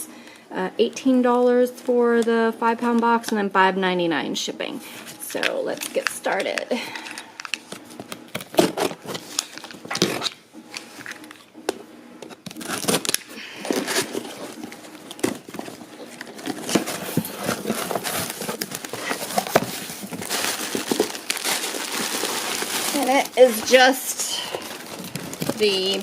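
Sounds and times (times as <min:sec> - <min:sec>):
packing material rustling: 0:05.1 - 0:11.5, 0:12.4 - 0:26.0.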